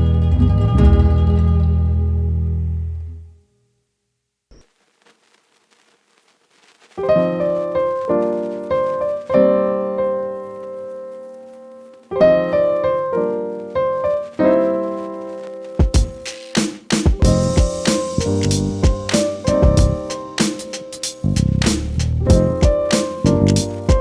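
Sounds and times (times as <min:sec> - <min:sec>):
piano chords: 0:07.0 - 0:24.0.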